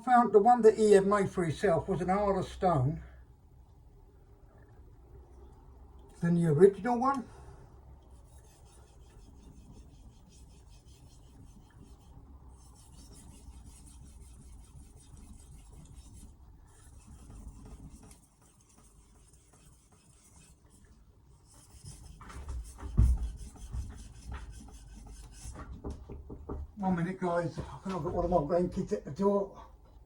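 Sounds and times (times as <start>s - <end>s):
knife scraping on whetstone: 8.2s - 25.6s.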